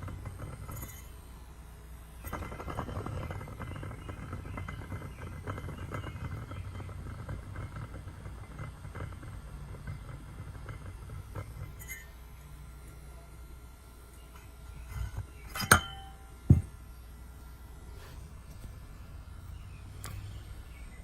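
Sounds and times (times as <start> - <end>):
fast fan bearing rattling: 0.0 - 13.1.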